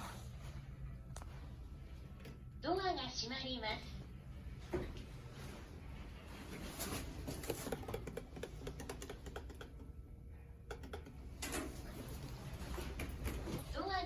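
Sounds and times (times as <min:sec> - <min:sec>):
low steady hum: 0:00.0 - 0:14.0
elevator clicks and rattles: 0:10.6 - 0:13.7.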